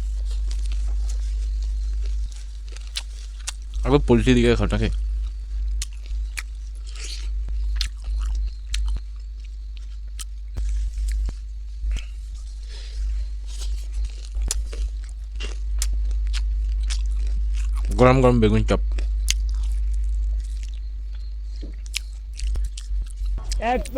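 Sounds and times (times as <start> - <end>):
steady low hum: 0.0 - 23.9
person chewing food: 0.5 - 3.7, 5.8 - 10.3, 13.6 - 17.9, 21.9 - 23.9.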